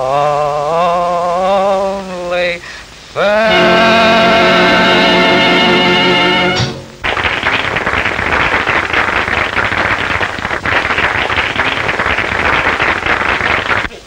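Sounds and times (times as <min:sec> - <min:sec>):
audience applauding: 0:03.4 - 0:14.0.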